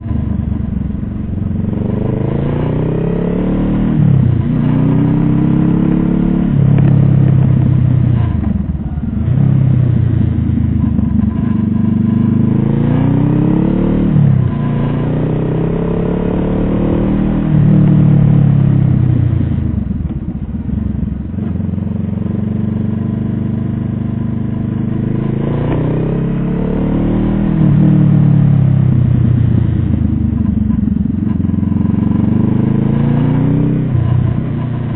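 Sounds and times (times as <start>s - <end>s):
vehicle engine shifting gears: 1.6s - 21.7s.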